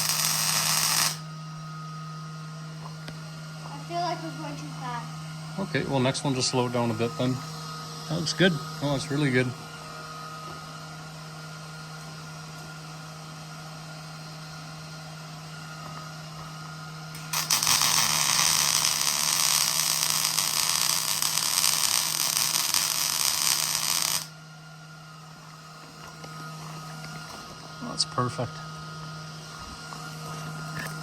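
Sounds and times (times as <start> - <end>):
welding arc crackling and sizzling: 0.0 - 1.3, 17.1 - 24.3.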